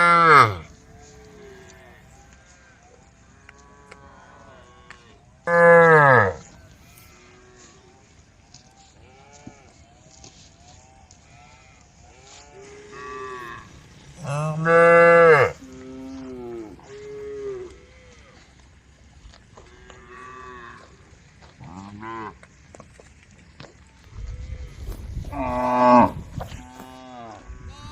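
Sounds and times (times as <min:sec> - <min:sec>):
cows mooing: 0:00.0 - 0:02.6, 0:03.4 - 0:07.8, 0:11.1 - 0:18.6, 0:19.6 - 0:22.5, 0:24.8 - 0:27.9.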